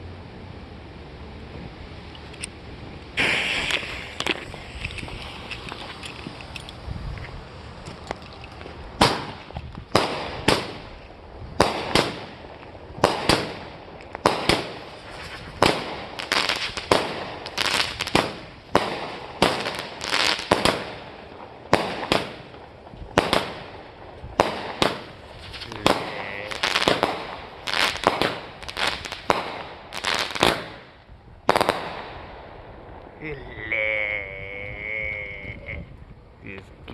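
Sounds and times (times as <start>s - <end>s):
firework launch thumps: 3.2s - 6.4s
firework aerial bangs: 3.2s - 6.6s, 8.7s - 33.6s.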